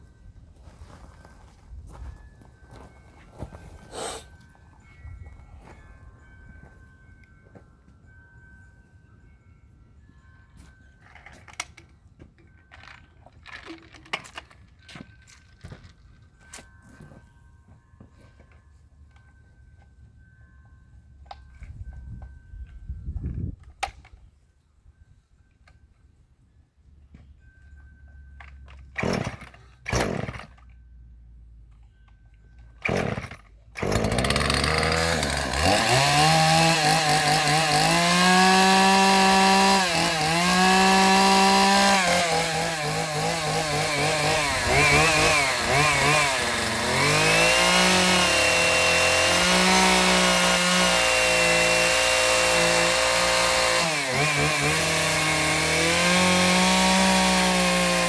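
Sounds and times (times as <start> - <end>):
chainsaw pull-start: 28.9 - 30.8, 32.8 - 58.0
chainsaw running at high revs: 29.0 - 30.6, 32.8 - 58.0.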